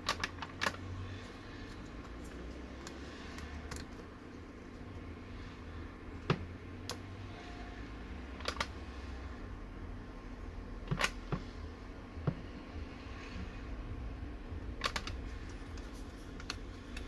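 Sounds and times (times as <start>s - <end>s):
low steady hum: 0.0s - 17.0s
tools and small parts clicking: 1.7s - 4.0s.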